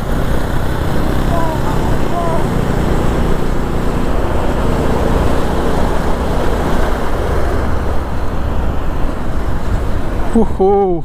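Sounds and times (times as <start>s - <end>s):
motorcycle engine running: 0.0s - 9.8s
road noise: 0.0s - 11.0s.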